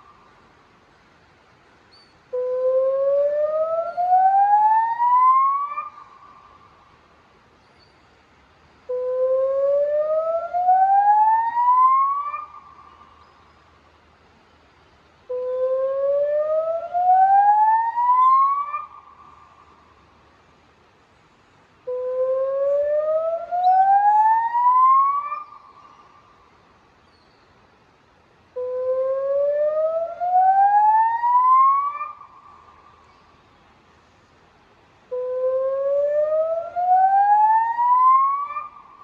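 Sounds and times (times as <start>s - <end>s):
rising warning siren whoops: 2.8s - 5.9s, 9.4s - 12.5s, 15.8s - 18.9s, 22.3s - 25.4s, 28.8s - 32.2s, 35.4s - 38.8s.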